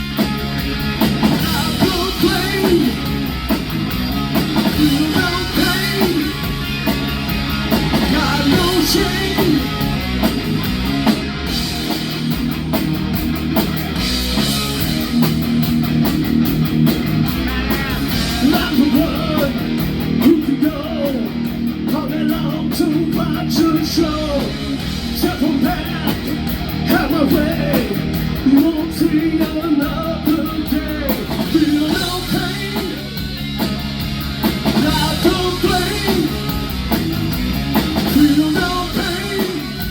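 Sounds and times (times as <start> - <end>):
electric guitar: 0.0 - 39.9
live rock band playing: 0.0 - 39.9
person singing: 1.4 - 3.1, 4.6 - 6.5, 7.9 - 9.8, 17.4 - 33.3, 34.8 - 36.5, 38.0 - 39.9.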